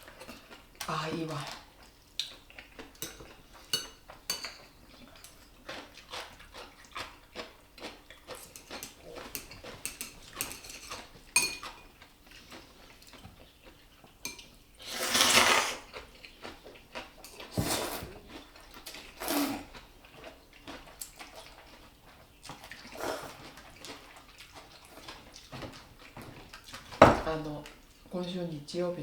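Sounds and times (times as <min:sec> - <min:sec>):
tableware clinking: 0:09.4 - 0:11.9.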